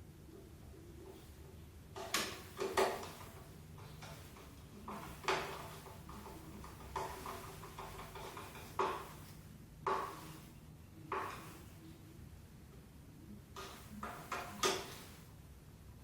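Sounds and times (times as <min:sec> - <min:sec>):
sharp knocks and clatters: 0:01.9 - 0:10.5, 0:11.1 - 0:11.7, 0:13.6 - 0:15.3.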